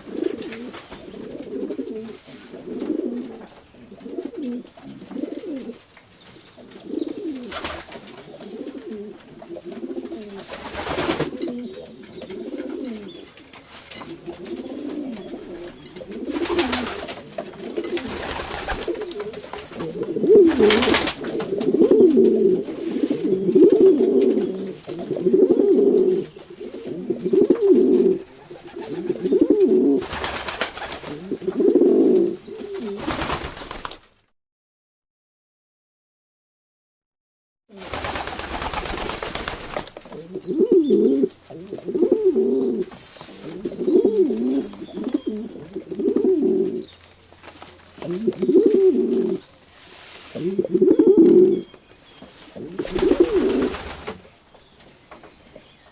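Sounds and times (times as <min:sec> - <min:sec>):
pigeons cooing: 0:00.0 - 0:05.8, 0:06.5 - 0:33.4, 0:40.0 - 0:47.0, 0:48.0 - 0:49.5, 0:50.2 - 0:51.8, 0:52.4 - 0:54.2.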